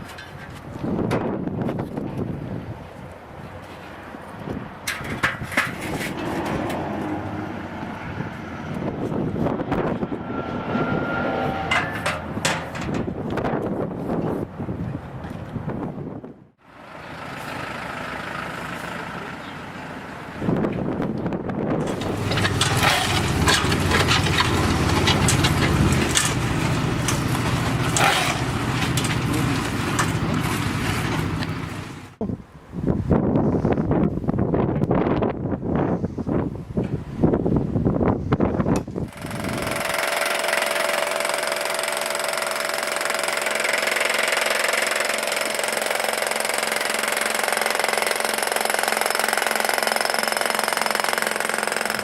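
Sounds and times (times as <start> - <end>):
clicks and scrapes: 4.9 - 7.3, 21.8 - 31.5
thin steady whine: 7.4 - 13.0
machine running: 9.5 - 13.1, 21.8 - 32.1.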